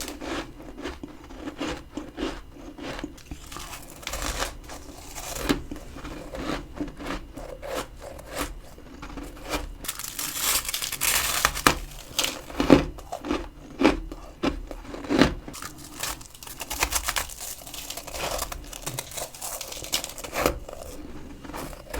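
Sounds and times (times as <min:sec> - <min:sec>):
frost crunching as chewed: 0:00.0 - 0:21.9.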